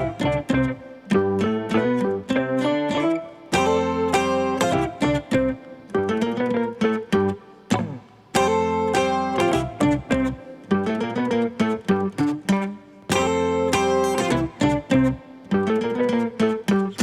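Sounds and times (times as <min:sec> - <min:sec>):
plucked guitar melody: 0:00.0 - 0:17.0
strummed guitar chords: 0:00.0 - 0:17.0.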